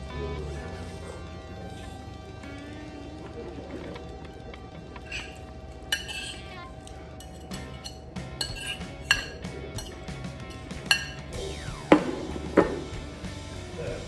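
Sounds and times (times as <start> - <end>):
background music: 0.0 - 14.0
cutlery clinking on a plate: 5.0 - 11.3.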